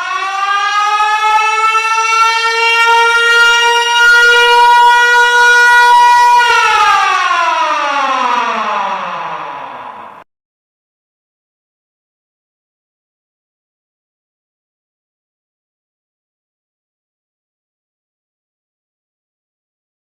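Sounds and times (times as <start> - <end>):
alarm siren wailing: 0.0 - 10.3.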